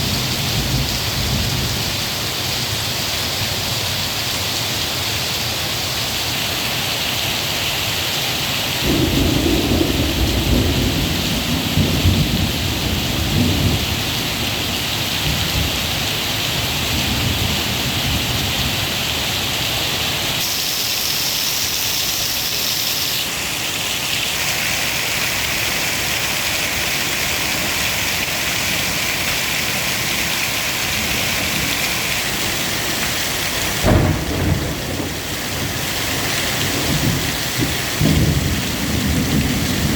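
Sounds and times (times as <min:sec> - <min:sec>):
heavy rain downpour: 0:00.0 - 0:39.9
thunder rumbling: 0:08.8 - 0:15.8, 0:29.4 - 0:39.9
sharp thunderclap: 0:08.9 - 0:13.9, 0:33.6 - 0:35.9, 0:36.5 - 0:39.9.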